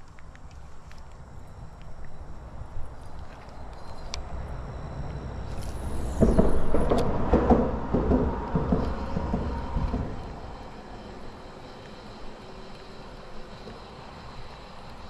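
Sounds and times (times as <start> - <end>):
vehicle passing with rattling rumble: 4.2 - 11.7.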